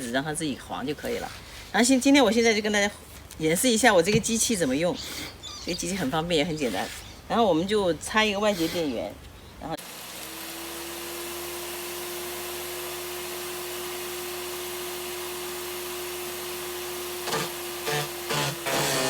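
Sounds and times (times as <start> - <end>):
garden shredder motor running: 9.8 - 19.0.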